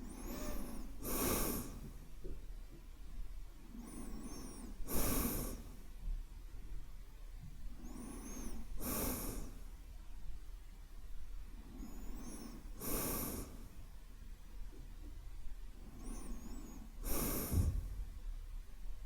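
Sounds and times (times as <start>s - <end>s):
man breathing slowly: 0.0s - 2.1s, 3.8s - 5.9s, 7.8s - 9.8s, 11.6s - 13.8s, 15.8s - 18.1s.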